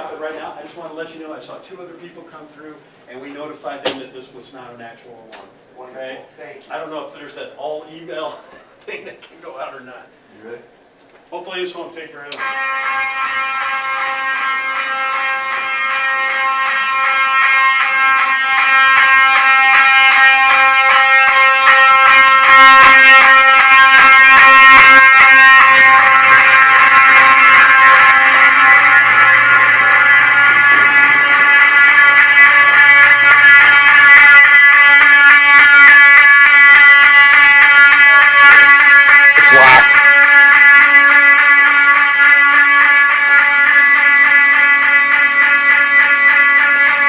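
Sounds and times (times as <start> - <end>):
fire alarm horns pulsing: 12.3 - 47.0.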